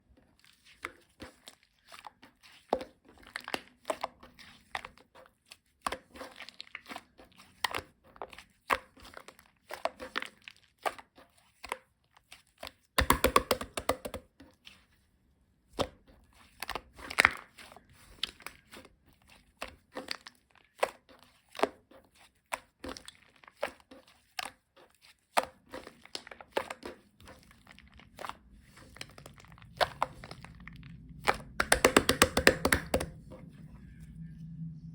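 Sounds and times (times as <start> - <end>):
handling clicks and taps: 13.0 - 14.2, 31.3 - 33.3.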